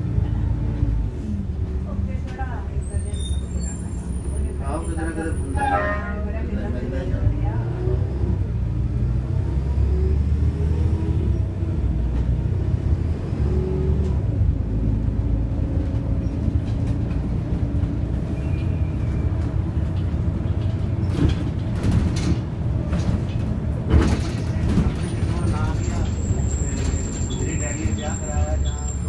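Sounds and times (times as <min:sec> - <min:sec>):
bus engine rumble and whine: 0:00.0 - 0:29.0
knocks and rattles: 0:19.9 - 0:25.8.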